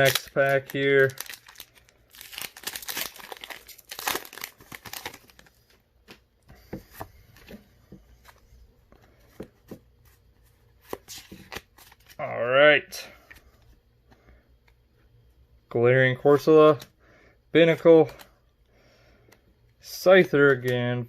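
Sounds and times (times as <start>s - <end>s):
foil pack tearing and crinkling: 0.0s - 5.5s.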